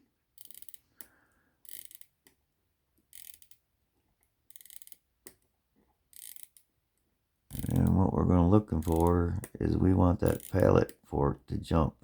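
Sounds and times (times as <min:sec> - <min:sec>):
watch winding clicks: 0:00.4 - 0:02.4, 0:03.1 - 0:03.6, 0:04.5 - 0:05.4, 0:06.1 - 0:06.7, 0:07.5 - 0:08.1, 0:08.7 - 0:11.1.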